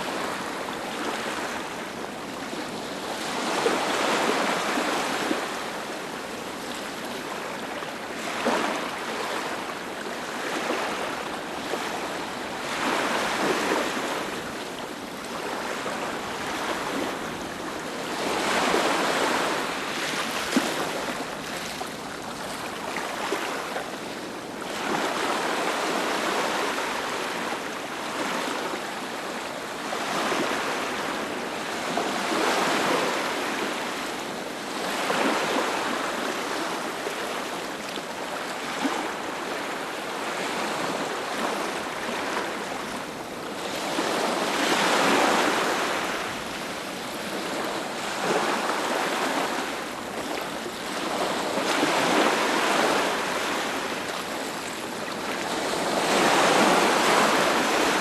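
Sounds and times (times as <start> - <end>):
ocean waves breaking: 43.6 - 58.0.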